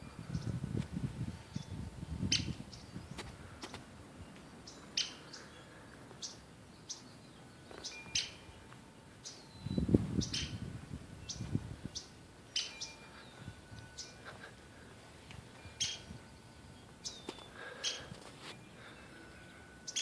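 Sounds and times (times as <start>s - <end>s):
sharp high bird chirps: 4.6s - 5.6s, 6.2s - 8.6s, 9.2s - 10.6s, 11.2s - 14.3s, 15.6s - 20.0s.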